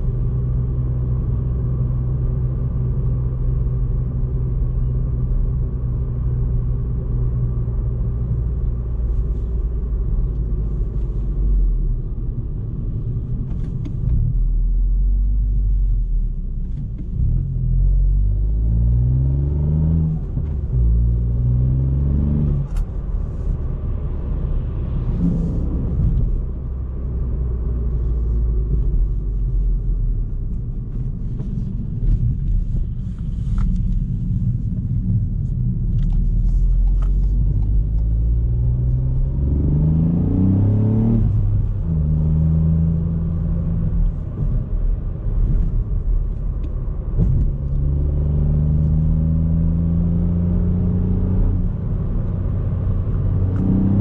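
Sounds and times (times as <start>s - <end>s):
road rumble: 0.0s - 54.0s
car engine revving: 17.2s - 27.6s, 35.8s - 46.4s, 47.0s - 54.0s.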